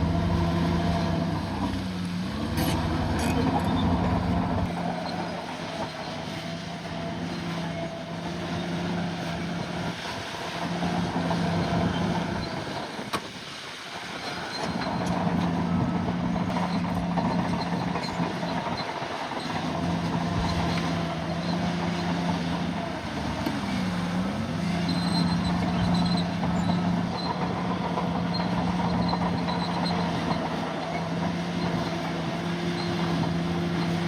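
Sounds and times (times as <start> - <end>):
bulldozer diesel engine running: 0.0 - 34.0.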